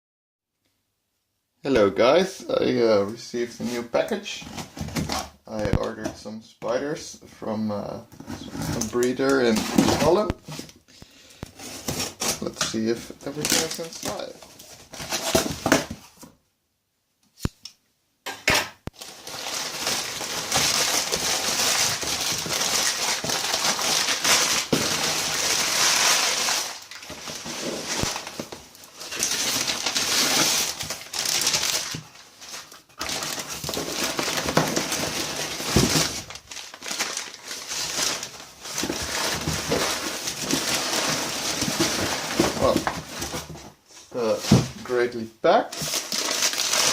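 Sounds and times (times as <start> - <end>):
packing material crinkling: 11.5 - 15.9, 18.9 - 43.6, 45.7 - 46.9.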